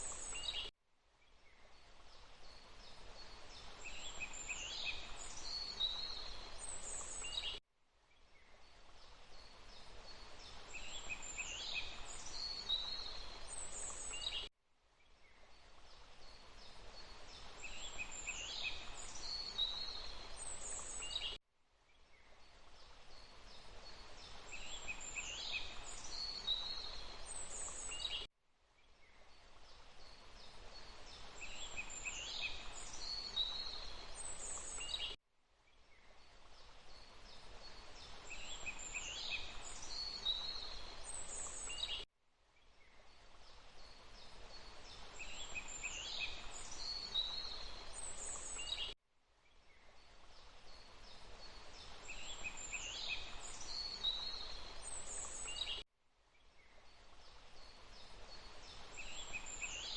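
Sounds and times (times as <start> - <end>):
running water rushing: 8.6 - 14.3, 50.1 - 55.7
songbirds chirping and whistling: 38.0 - 42.0.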